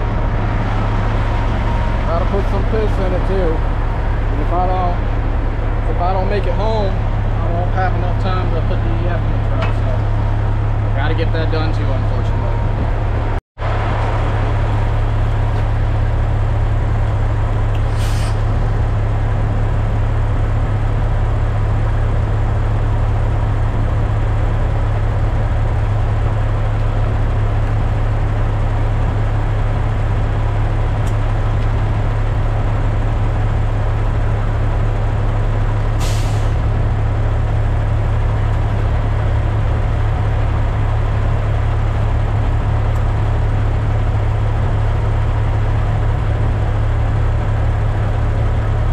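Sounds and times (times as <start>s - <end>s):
diesel truck engine droning: 0.0s - 48.9s
short air hisses: 17.8s - 18.5s, 36.0s - 36.6s.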